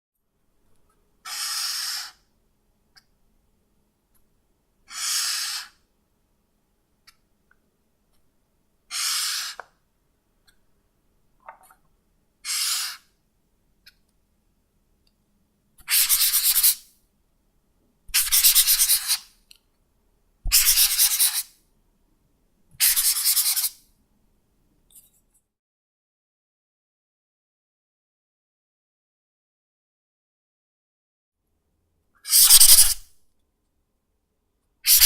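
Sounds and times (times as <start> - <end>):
marker tip scratching: 15.8 - 16.8, 18.2 - 19.3, 20.5 - 21.5, 22.8 - 23.8, 32.3 - 33.1.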